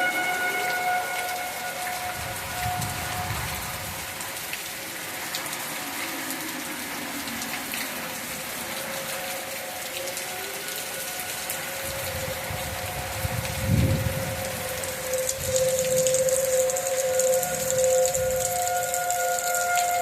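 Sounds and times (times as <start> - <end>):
distant warning siren wavering: 0.0 - 20.0
heavy rain: 0.0 - 20.0.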